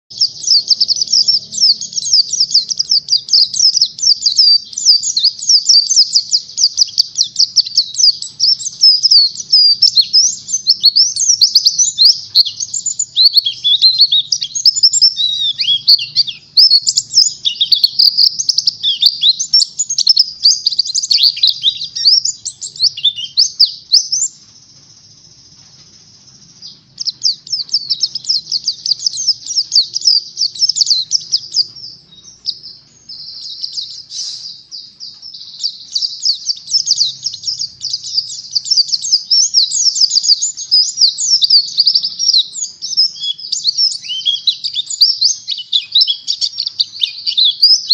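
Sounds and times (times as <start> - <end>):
bird twittering song: 0.1 - 47.9
faint hiss: 24.1 - 27.5, 33.9 - 34.7.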